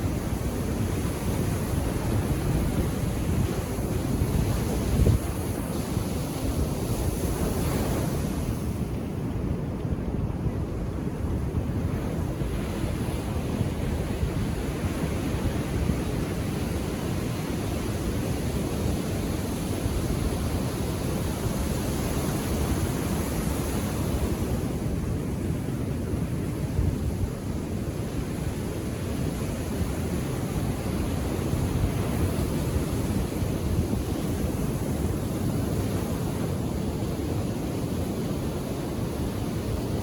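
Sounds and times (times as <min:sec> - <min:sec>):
surf washing onto beach: 0:00.0 - 0:40.0.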